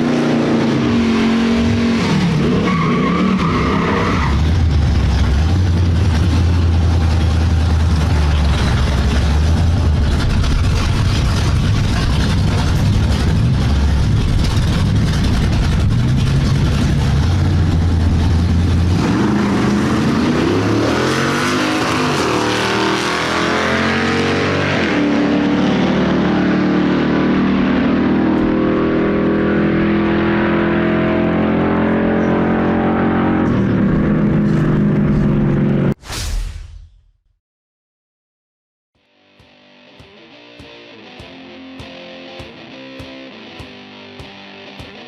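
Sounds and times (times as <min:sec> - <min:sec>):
engine revving through gears: 0:00.0 - 0:36.0.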